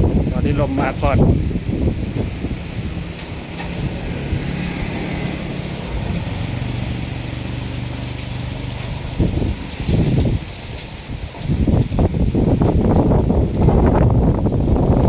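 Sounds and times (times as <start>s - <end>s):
vehicle engine running: 0.1s - 10.8s.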